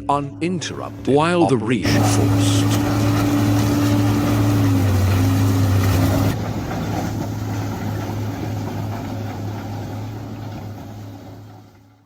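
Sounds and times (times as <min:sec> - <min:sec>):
wood chipper engine humming: 0:00.6 - 0:12.0
loud grinding: 0:01.8 - 0:08.9.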